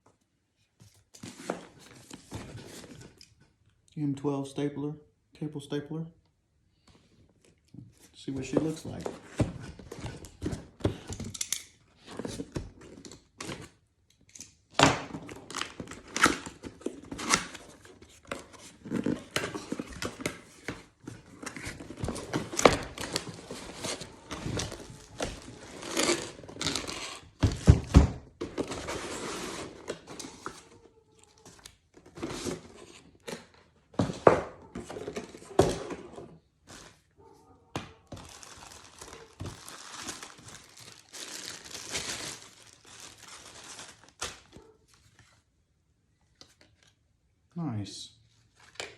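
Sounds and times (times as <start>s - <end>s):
packaging knocks and thunks: 18.7s - 29.0s, 33.3s - 37.0s, 37.8s - 44.6s
packaging tearing and crinkling: 21.6s - 27.4s, 38.1s - 44.6s.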